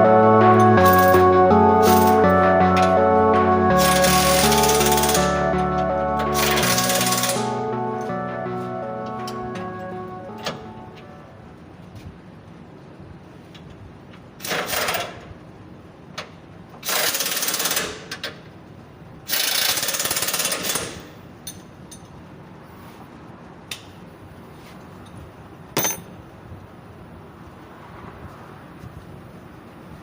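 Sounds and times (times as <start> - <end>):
impact wrench hammering: 25.8 - 26.1
light metal clinks: 25.8 - 26.1.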